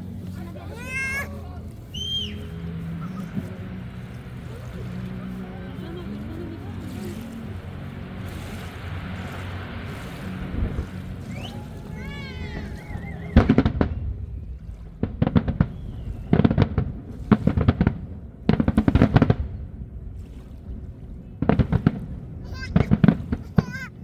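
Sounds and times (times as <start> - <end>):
fireworks crackling: 0.0 - 24.0
warbling firework whistle: 1.8 - 6.0, 7.4 - 17.9.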